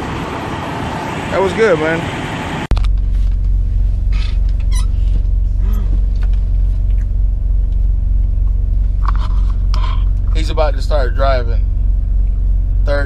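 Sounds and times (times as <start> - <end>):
diesel truck engine idling: 0.0 - 13.0
brief low hum: 2.7 - 13.0.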